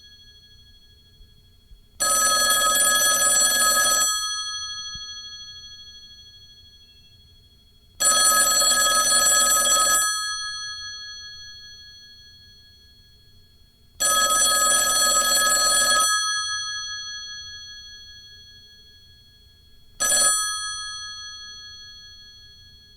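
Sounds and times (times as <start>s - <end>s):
telephone bell ringing: 2.0s - 6.2s, 8.0s - 12.7s, 14.0s - 19.1s, 20.0s - 22.9s.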